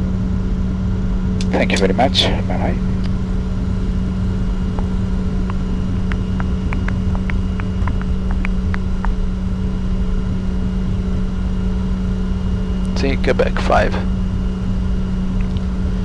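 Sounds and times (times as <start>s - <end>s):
aircraft cockpit drone: 0.0s - 16.0s
faint ticks: 4.7s - 9.2s.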